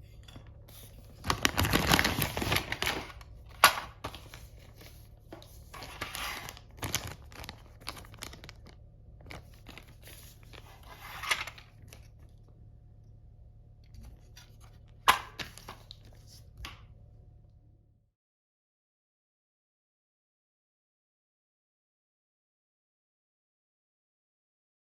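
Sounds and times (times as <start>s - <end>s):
plastic and paper rustling: 0.1s - 12.4s, 14.0s - 16.8s.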